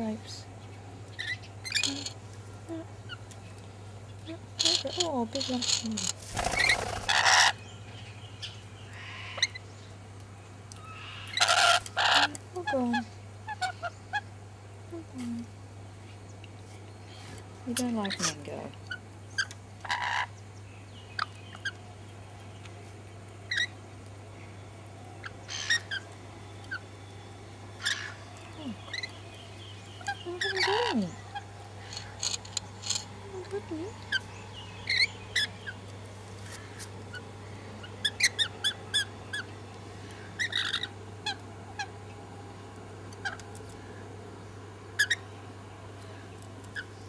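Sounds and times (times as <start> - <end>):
birds chirping: 0.0 - 47.0
steady low hum: 0.0 - 47.0
bird squawk: 6.4 - 7.6, 8.4 - 9.7, 10.8 - 14.3, 18.0 - 20.4, 23.5 - 23.8, 25.2 - 26.9, 27.8 - 29.2, 29.9 - 33.0, 34.1 - 35.8, 36.4 - 39.5, 40.2 - 42.0, 45.0 - 45.3.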